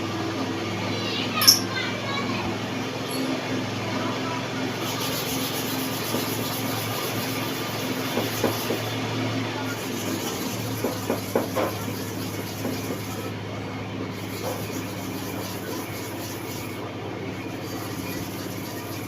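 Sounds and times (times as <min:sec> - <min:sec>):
blade scraping on sharpening stone: 0:01.4 - 0:01.7.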